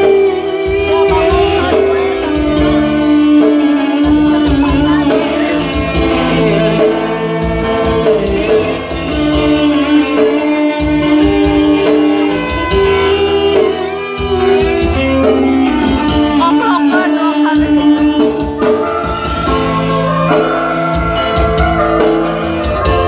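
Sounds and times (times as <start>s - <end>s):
guitar and bass accompaniment: 0.0s - 23.0s
lead melody in long notes: 0.0s - 23.0s.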